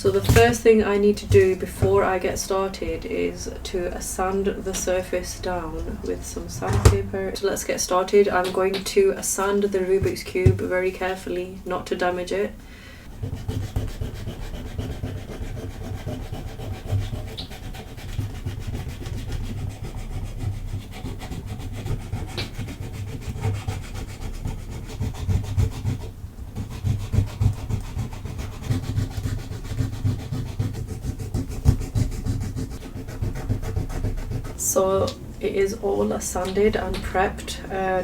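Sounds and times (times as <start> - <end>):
sandpaper rubbing on plastic: 13.2 - 34.7.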